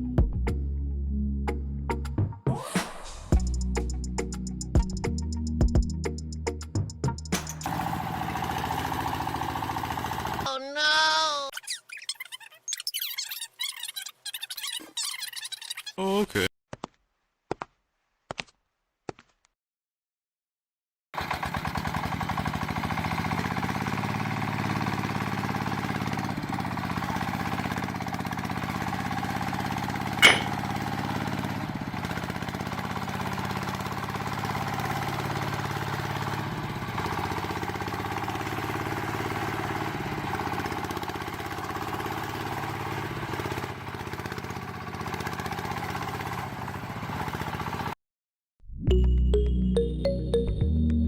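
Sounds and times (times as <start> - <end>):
small engine running: 7.4 - 10.5, 21.2 - 48.0
sharp click: 30.2 - 30.6.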